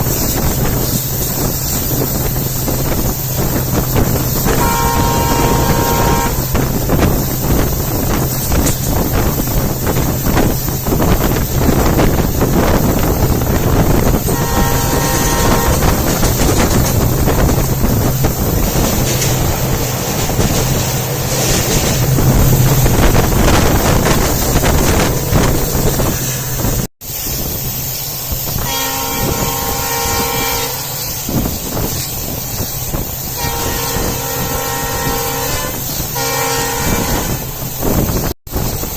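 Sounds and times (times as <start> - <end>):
diesel locomotive engine humming: 0.0 - 38.9
wind buffeting microphone: 0.0 - 38.9
train horn: 4.3 - 7.6, 13.6 - 17.5, 28.5 - 31.4, 33.2 - 38.1.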